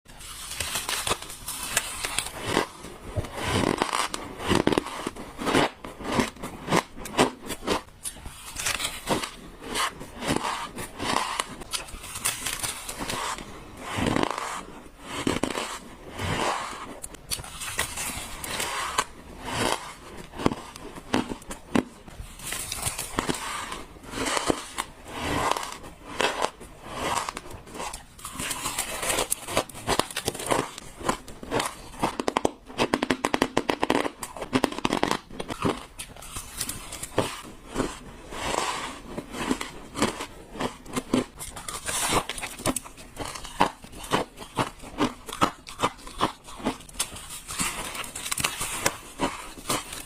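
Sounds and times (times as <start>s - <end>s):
ice crunching being bitten: 27.0s - 32.3s, 39.4s - 50.0s.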